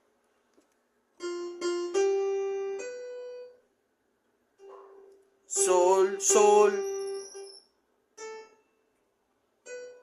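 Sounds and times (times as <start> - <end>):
piano melody: 1.2 - 3.7, 4.6 - 7.6, 8.2 - 8.8, 9.6 - 10.0.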